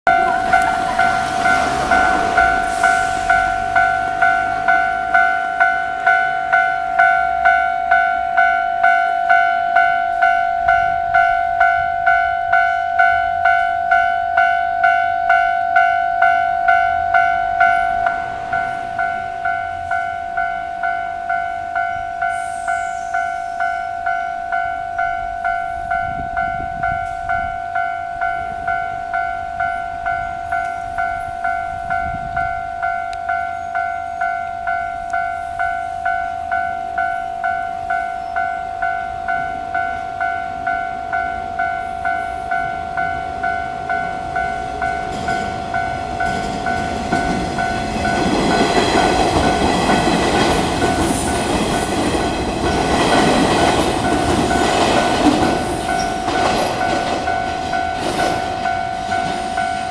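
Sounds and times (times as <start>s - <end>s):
train passing on rails: 0.1s - 59.9s
level crossing bell ringing: 23.2s - 53.0s.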